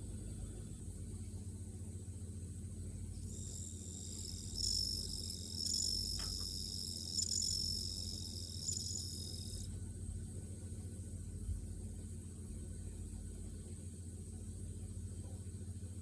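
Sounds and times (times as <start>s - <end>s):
low hum: 2.8s - 15.4s
crickets trilling: 3.2s - 9.7s.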